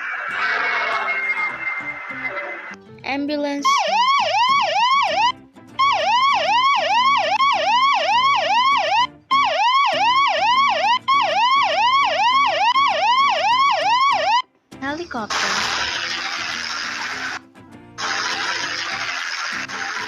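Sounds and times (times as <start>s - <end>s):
ambulance siren yelping: 0.0s - 2.7s, 3.6s - 14.4s.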